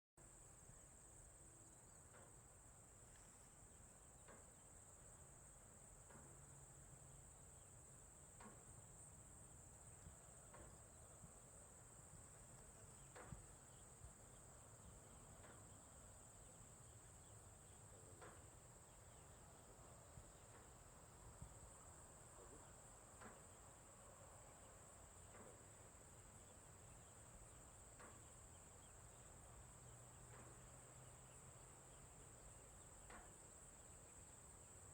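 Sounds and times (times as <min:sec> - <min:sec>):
faint chirps: 0:11.8 - 0:34.9.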